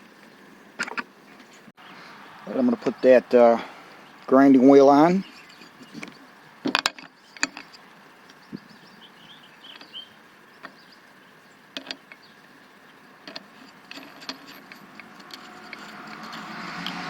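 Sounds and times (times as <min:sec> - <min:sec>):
metal parts clicking and clinking: 0:05.5 - 0:07.8, 0:11.8 - 0:12.2, 0:13.2 - 0:17.0.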